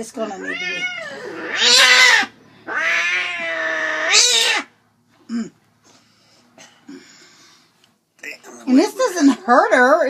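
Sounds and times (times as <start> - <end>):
cat yowling: 0.2 - 4.7.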